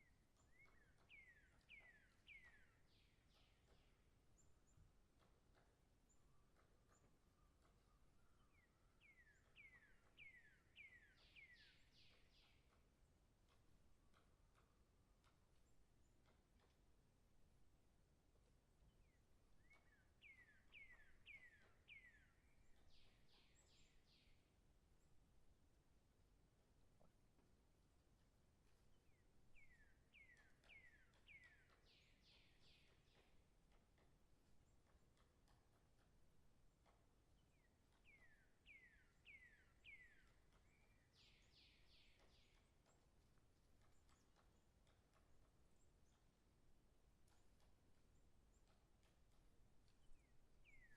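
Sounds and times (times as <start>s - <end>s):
bird singing whistled notes: 0.0s - 3.9s, 6.9s - 12.8s, 19.0s - 24.4s, 29.0s - 33.3s, 37.4s - 42.9s, 49.9s - 50.9s.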